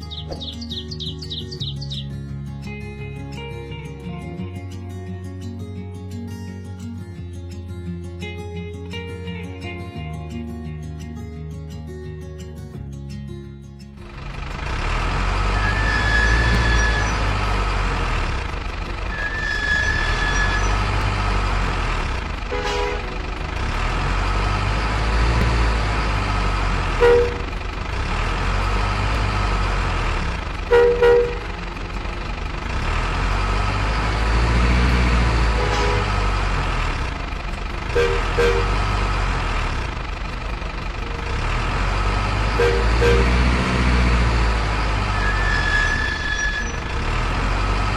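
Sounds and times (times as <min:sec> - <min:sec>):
truck engine rumbling: 0:00.0 - 0:04.6, 0:14.0 - 0:47.9
two-note horn toots: 0:15.5 - 0:17.6, 0:22.4 - 0:23.3, 0:26.9 - 0:27.6, 0:30.6 - 0:31.8, 0:35.0 - 0:36.4, 0:37.8 - 0:39.2, 0:42.4 - 0:44.2.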